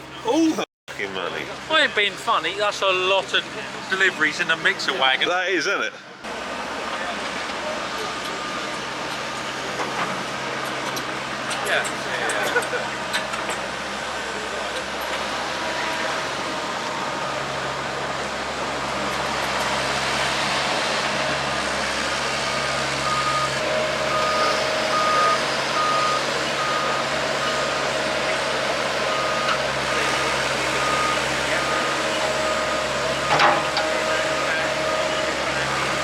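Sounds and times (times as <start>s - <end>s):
outdoor noise: 0.0s - 36.0s
engine hum: 6.2s - 36.0s
reversing alarm beeping: 22.0s - 36.0s.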